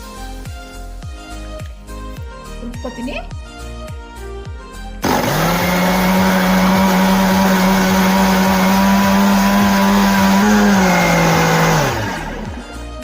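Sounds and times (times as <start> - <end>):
mixer grinder motor whine: 5.0 - 13.0.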